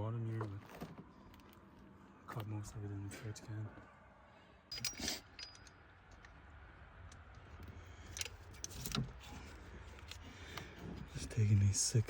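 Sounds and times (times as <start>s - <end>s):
metal tools clinking: 4.7s - 6.3s.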